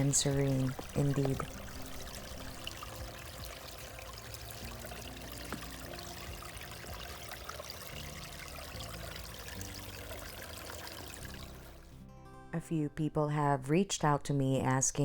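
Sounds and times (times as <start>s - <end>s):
flowing water rushing: 0.0s - 11.9s.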